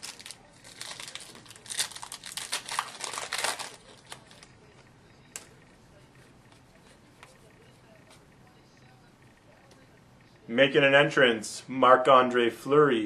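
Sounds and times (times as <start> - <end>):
wrapper crinkling: 0.0 - 4.5.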